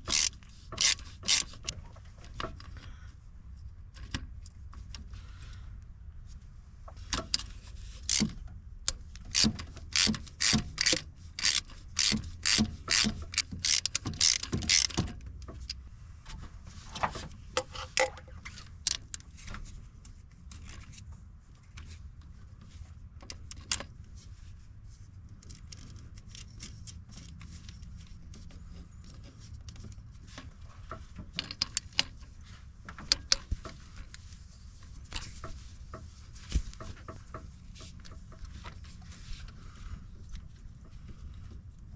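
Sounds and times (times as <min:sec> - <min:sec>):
ratchet wrench clicking: 0:00.0 - 0:01.7, 0:08.0 - 0:08.3, 0:09.2 - 0:15.0, 0:18.8 - 0:19.2.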